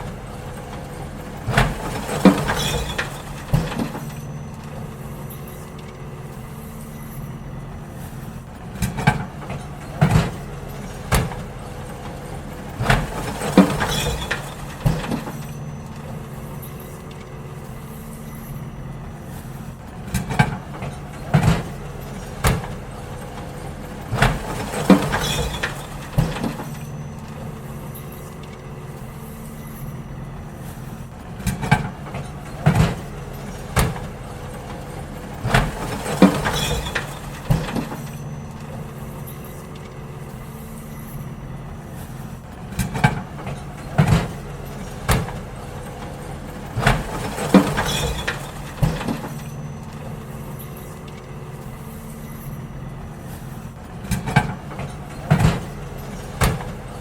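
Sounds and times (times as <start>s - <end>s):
bins banging and clattering: 0.0s - 57.0s
garbage truck diesel engine: 0.0s - 57.0s.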